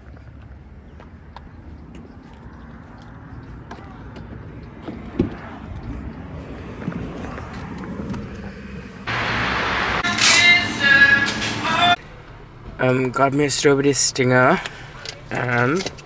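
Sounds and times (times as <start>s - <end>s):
car rumbling on the move: 1.8s - 12.8s
loud rushing hiss: 9.1s - 12.0s.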